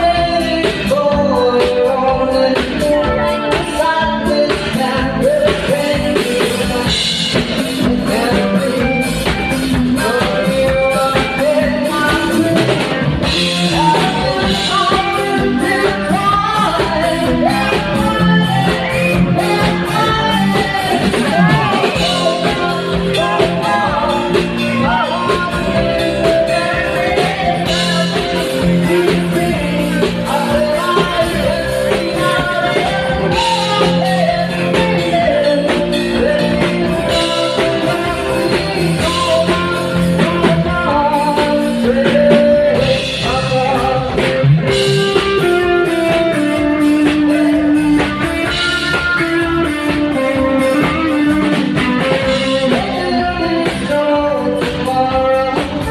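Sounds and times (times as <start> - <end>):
rock song with singing: 0.0 - 55.9.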